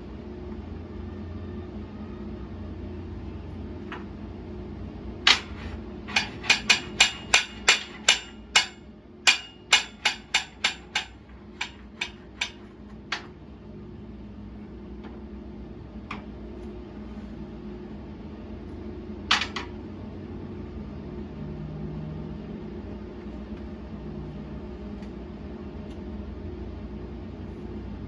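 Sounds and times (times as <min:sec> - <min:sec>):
hammer striking steel: 0:05.3 - 0:12.6.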